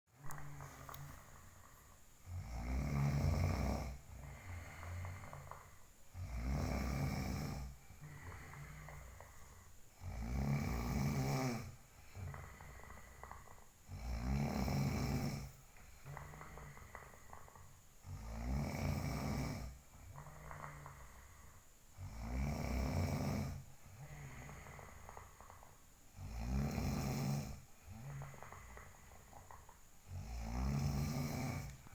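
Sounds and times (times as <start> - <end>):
person snoring: 0.2 - 31.9
quiet breaths: 0.2 - 31.9
soft breath: 3.8 - 6.1, 7.4 - 9.9, 11.7 - 13.8, 19.6 - 21.9, 23.5 - 25.9.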